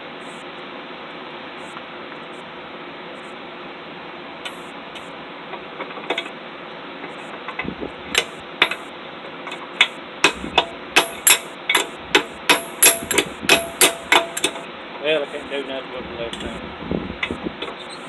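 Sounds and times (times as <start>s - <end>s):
steady hiss: 0.0s - 18.0s
hammer ringing on anvil: 10.2s - 11.5s, 12.5s - 14.6s.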